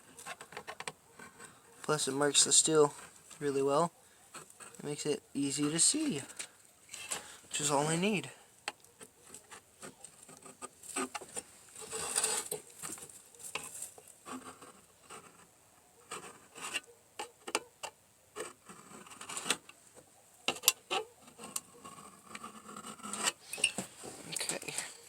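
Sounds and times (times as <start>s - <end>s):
knife scratching sheet steel: 11.8s - 12.6s, 20.5s - 23.8s.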